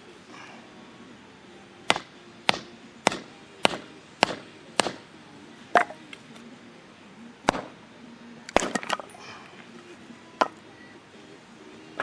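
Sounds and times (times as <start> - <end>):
firewood being chopped: 1.9 - 5.1, 7.4 - 7.8.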